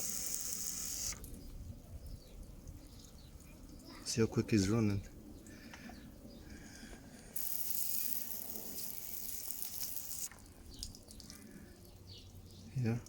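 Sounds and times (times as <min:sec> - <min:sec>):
water spraying with hiss: 0:00.0 - 0:01.3, 0:07.4 - 0:10.4.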